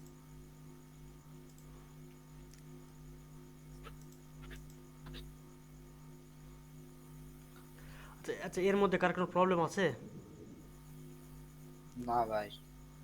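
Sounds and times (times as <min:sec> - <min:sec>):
low electrical hum: 0:00.0 - 0:13.0
faint clicks: 0:01.4 - 0:03.0, 0:03.7 - 0:05.3.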